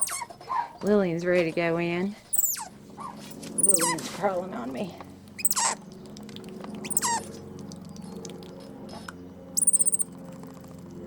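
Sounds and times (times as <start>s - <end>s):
monkey high chirps: 0.0s - 0.3s, 2.3s - 2.7s, 3.6s - 4.0s, 5.4s - 5.8s, 6.4s - 8.5s, 9.6s - 10.1s
monkey squeak: 0.0s - 0.3s, 2.3s - 2.7s, 3.6s - 4.0s, 5.4s - 5.8s, 6.8s - 7.3s, 9.6s - 10.1s.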